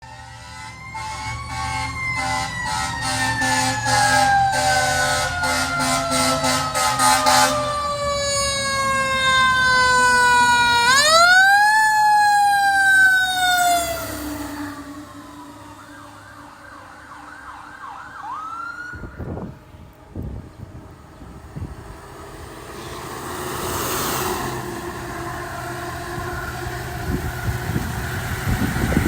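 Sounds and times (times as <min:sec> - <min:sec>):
pulsed horn blasts: 0:00.0 - 0:07.8, 0:20.4 - 0:29.0
fire truck siren wail: 0:00.0 - 0:29.0.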